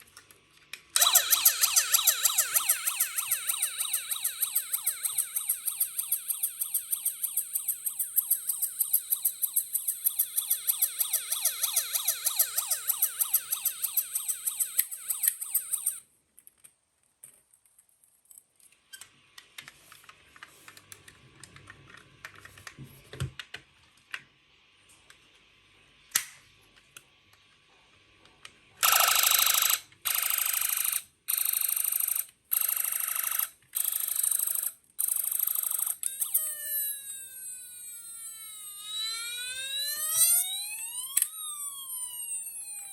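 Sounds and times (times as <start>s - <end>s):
faint clicks and handling noise: 0.0s - 1.1s, 14.5s - 25.4s
toy car electronic siren yelping: 1.0s - 16.0s, 28.8s - 42.9s.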